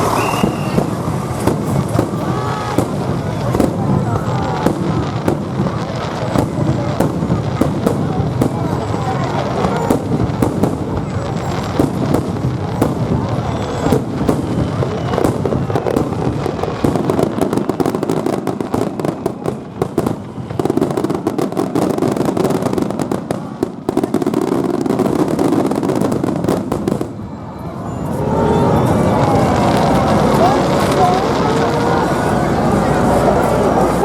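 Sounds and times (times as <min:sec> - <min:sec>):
crowd voices: 0:00.0 - 0:34.0
fireworks bangs and crackles: 0:00.0 - 0:34.0.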